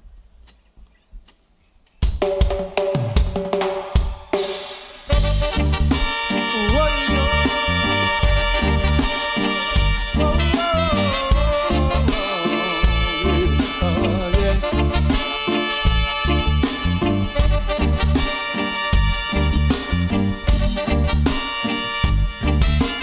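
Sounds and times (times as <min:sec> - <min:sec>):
drums and bass beat: 0:02.0 - 0:23.0
sliding melodic lead line: 0:05.2 - 0:23.0.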